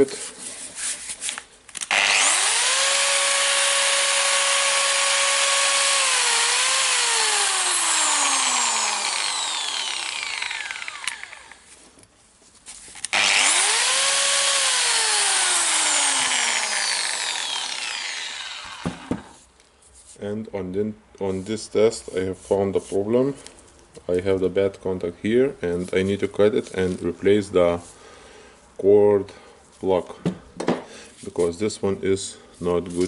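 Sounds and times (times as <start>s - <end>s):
angle grinder whining: 1.9s - 11.7s, 13.1s - 19.4s.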